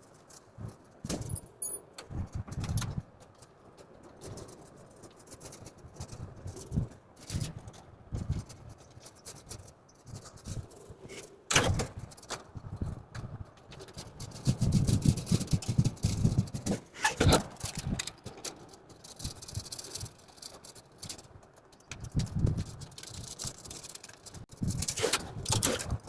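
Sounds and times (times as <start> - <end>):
metal clicks and clinks: 1.1 - 2.1.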